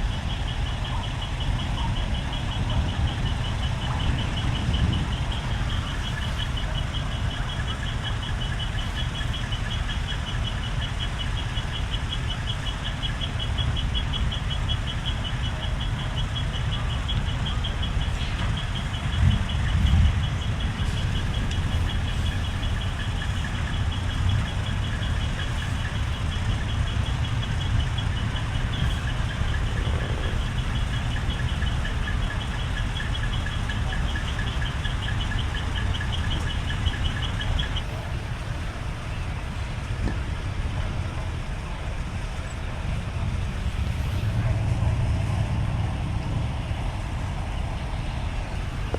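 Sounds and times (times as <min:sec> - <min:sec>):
truck diesel engine idling: 0:00.0 - 0:48.9
fast-pulsing high tone: 0:18.6 - 0:38.3
lower pulsing tone: 0:23.7 - 0:32.8.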